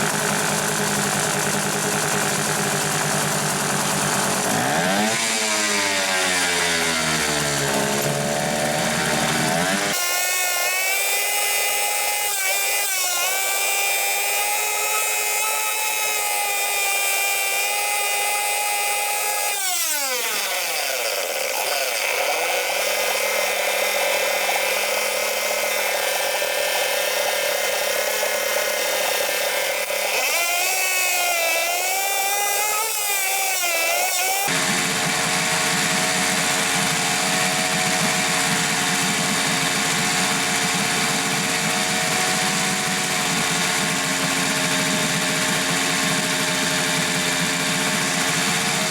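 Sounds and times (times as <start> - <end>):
outboard motor running: 0.0 - 10.0, 34.5 - 48.9.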